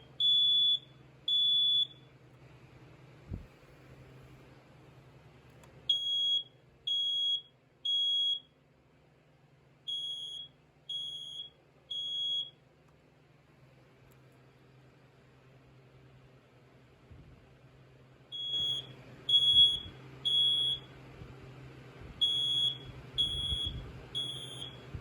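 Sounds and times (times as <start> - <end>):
smoke alarm beeps: 0.0 - 2.1, 5.8 - 8.6, 9.9 - 12.6, 18.3 - 21.0, 22.2 - 25.0
click: 5.5 - 5.8, 14.1 - 14.4.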